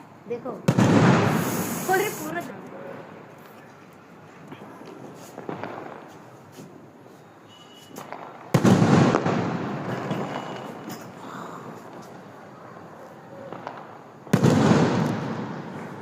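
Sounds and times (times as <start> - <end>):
faint firework pops: 4.8 - 6.2, 7.9 - 10.9, 13.5 - 15.6.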